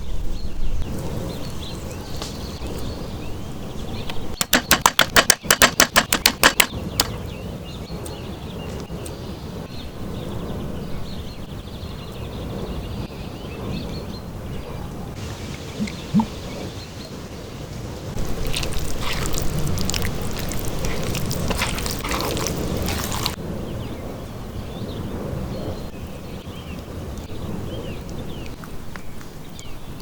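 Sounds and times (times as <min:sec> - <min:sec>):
knife chopping on board: 0:04.4 - 0:07.1.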